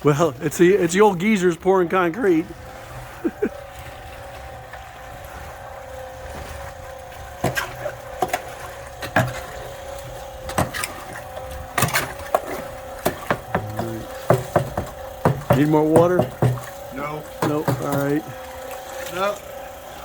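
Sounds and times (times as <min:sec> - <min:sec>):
steady machine hum: 0:00.0 - 0:20.0
tool scraping wet concrete: 0:10.5 - 0:16.8, 0:17.4 - 0:18.2.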